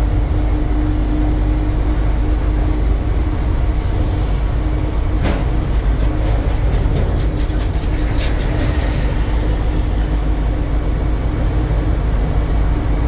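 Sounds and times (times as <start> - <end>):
truck engine and road rumble: 0.0 - 13.0.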